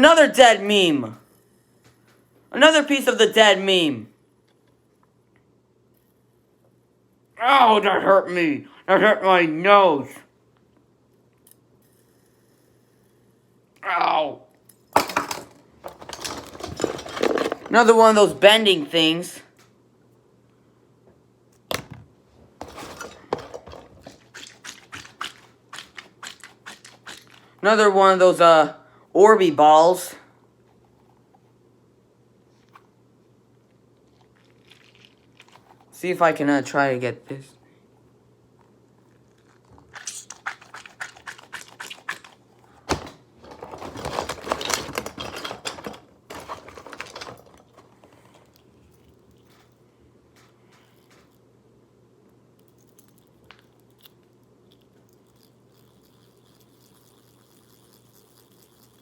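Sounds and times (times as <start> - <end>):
plastic clattering and rattling: 15.0 - 17.9, 21.7 - 27.4, 39.7 - 49.8
plastic toys clicking and rustling: 15.0 - 17.9, 22.6 - 27.5, 39.7 - 49.8.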